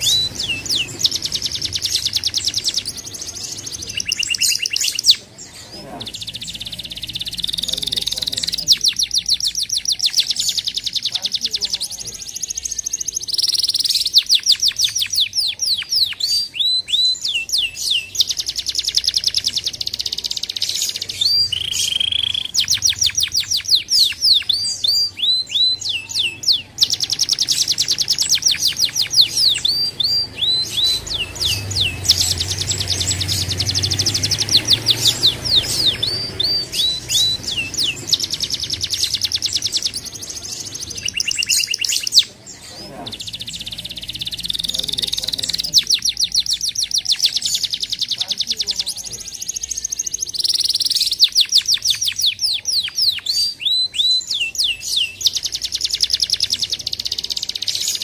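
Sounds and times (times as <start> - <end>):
canary singing: 0.0 - 58.0.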